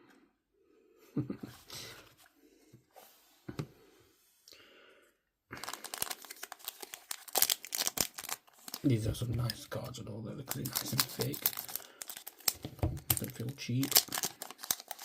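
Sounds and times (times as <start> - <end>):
foil wrapper crinkling and tearing: 5.6 - 9.7, 10.5 - 15.0
cards being handled: 10.5 - 15.0.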